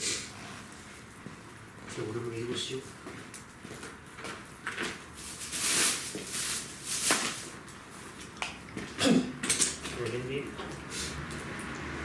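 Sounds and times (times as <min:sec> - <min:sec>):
rustling and scraping: 0:04.2 - 0:09.0.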